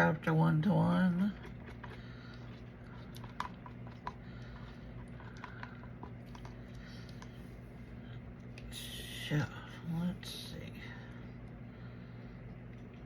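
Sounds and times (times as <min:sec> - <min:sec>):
low hum: 0:00.0 - 0:13.0
plastic cups clicking and tapping: 0:03.1 - 0:07.4.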